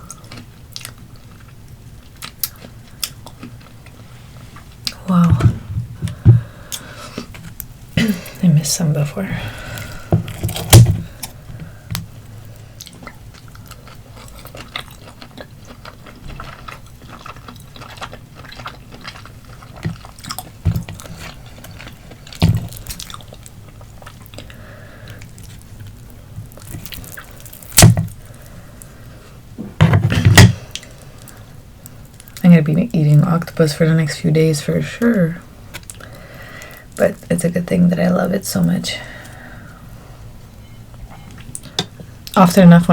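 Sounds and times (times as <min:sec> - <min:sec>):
close chewing mouth sounds: 0:00.0 - 0:05.0, 0:09.5 - 0:29.0.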